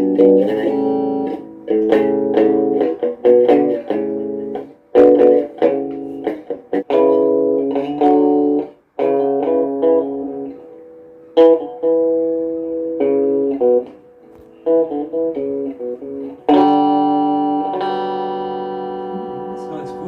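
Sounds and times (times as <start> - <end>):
guitar chords: 0.0 - 20.0.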